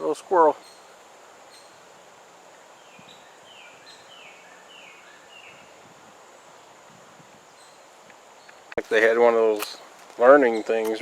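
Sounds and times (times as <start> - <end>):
outdoor background hiss: 0.0 - 11.0
songbird calling: 0.0 - 11.0.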